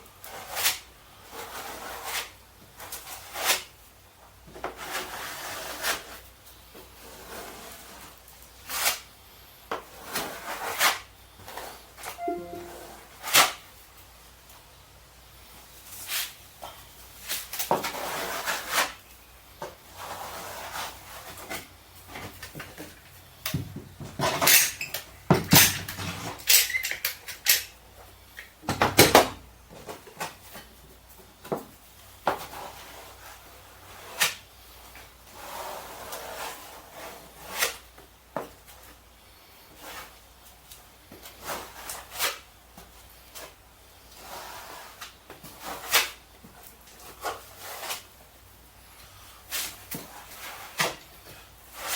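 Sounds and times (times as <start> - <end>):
wooden cabinet parts knocking: 23.5 - 24.4.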